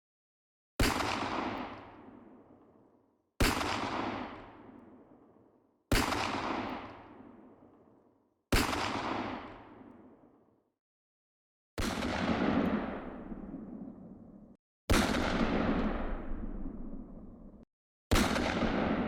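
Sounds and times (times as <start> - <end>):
gunshots with rolling echo: 0.8 - 10.5, 11.8 - 19.0.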